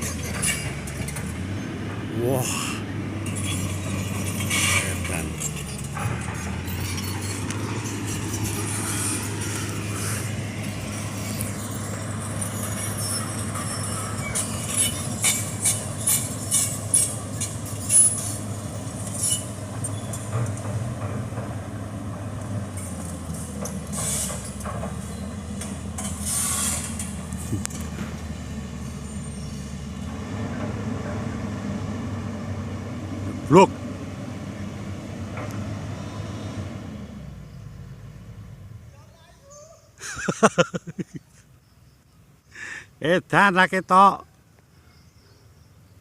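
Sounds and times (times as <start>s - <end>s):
excavator diesel engine running: 0.0s - 38.9s
sharp engine knocks: 20.1s - 28.2s.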